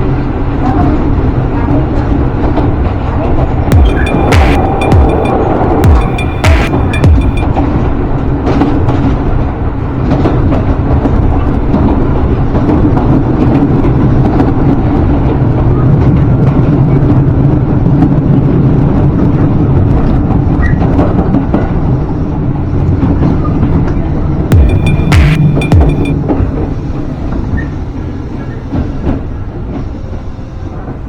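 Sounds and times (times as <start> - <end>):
train wheels rumbling on track: 7.6 - 24.4, 26.7 - 31.0.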